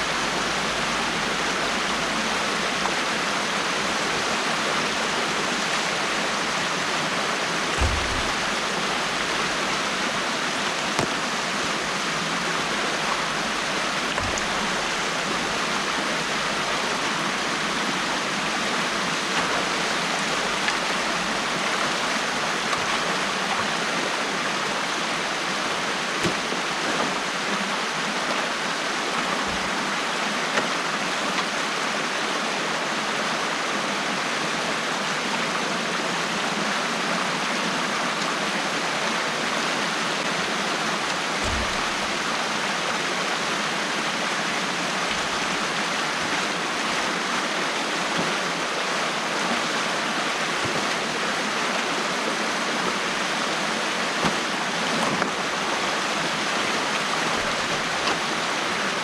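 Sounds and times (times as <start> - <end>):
stream water rushing: 0.0 - 59.0
soft low thumps: 7.6 - 10.1, 41.4 - 42.3.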